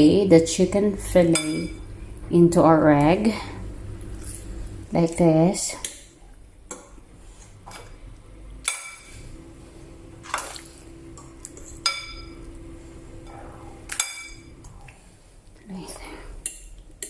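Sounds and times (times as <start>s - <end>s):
utensil clinking against dish: 11.5s - 12.5s.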